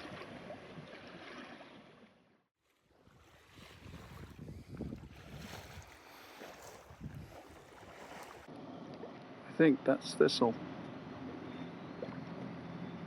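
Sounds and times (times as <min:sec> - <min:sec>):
water washing along hull: 0:00.0 - 0:09.2
wind buffeting microphone: 0:03.1 - 0:08.5.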